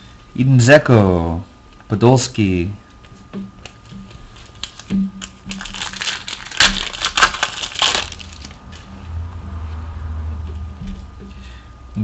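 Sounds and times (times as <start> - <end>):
card pack wrapper crinkling: 4.3 - 8.6.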